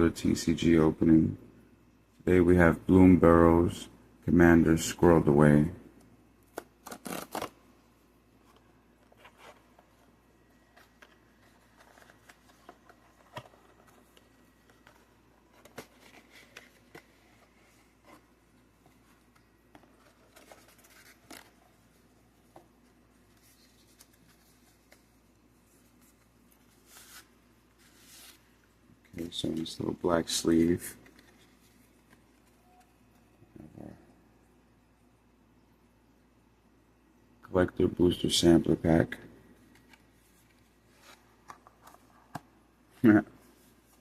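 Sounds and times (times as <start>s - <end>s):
cardboard and plastic packaging rustling: 8.4s - 33.3s.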